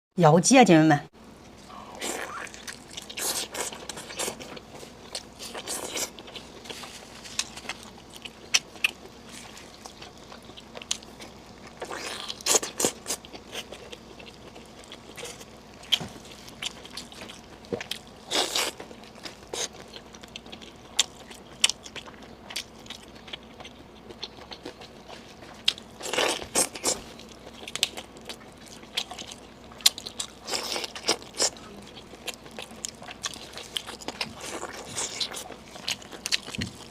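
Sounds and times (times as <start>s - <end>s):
crunching and scraping: 2.5s - 22.3s.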